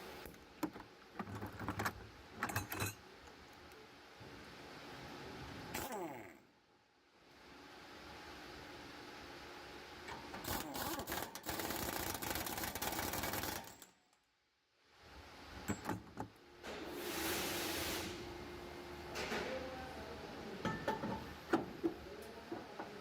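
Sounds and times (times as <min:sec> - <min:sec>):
rapid mechanical clicking rattle: 0:10.4 - 0:13.9
burst of hiss: 0:16.9 - 0:18.3.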